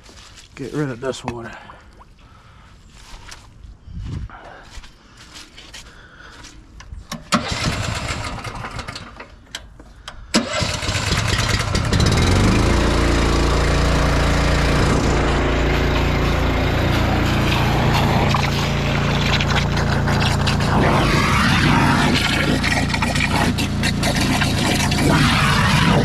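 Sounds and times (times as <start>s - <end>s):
small gasoline engine starting: 7.1s - 9.7s, 10.3s - 26.0s.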